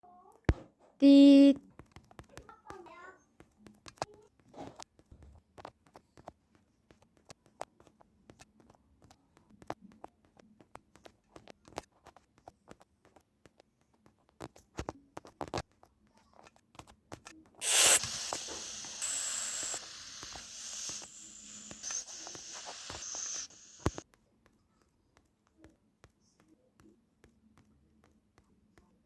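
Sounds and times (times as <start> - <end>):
hiss: 17.6 - 24.0.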